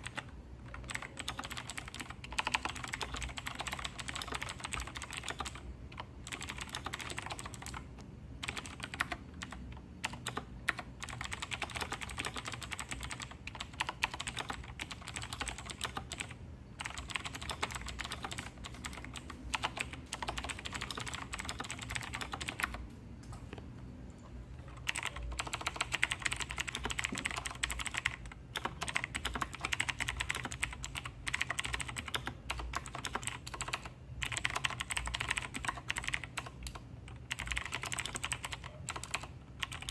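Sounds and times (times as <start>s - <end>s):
mechanical keyboard typing: 0.0s - 22.8s, 24.6s - 39.9s.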